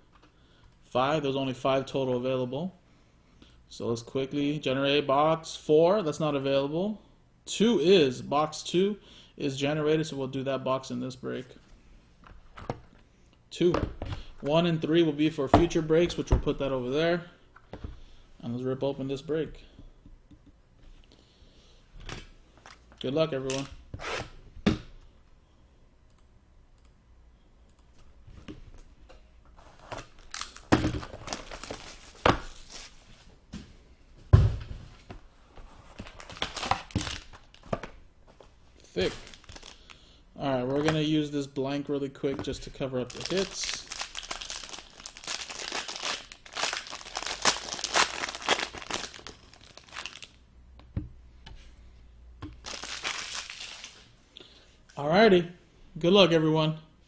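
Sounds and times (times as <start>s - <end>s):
packaging rustling: 29.7s - 33.1s, 35.9s - 37.8s, 38.9s - 40.0s, 43.0s - 50.4s, 52.6s - 54.0s.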